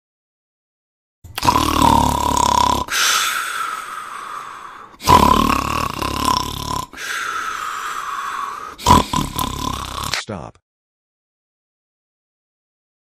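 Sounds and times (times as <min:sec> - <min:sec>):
cat snoring: 0:01.4 - 0:02.9, 0:05.0 - 0:06.9, 0:08.7 - 0:10.1.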